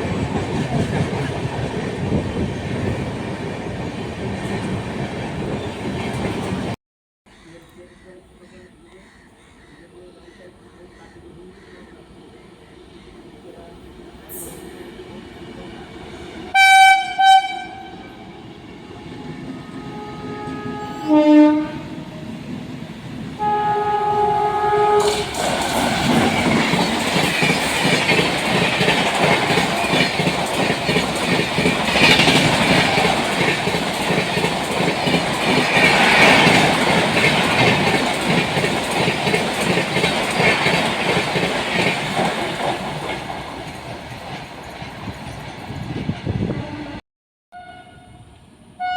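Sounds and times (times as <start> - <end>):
train horn: 16.5 - 22.5, 23.4 - 25.4, 46.4 - 48.9
train wheels clattering: 25.0 - 46.1.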